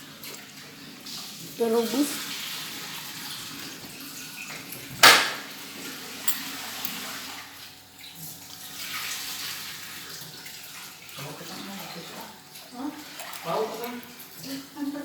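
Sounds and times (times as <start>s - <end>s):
tap water running into a pot: 0.0s - 15.0s
kitchenware clank: 5.0s - 5.5s.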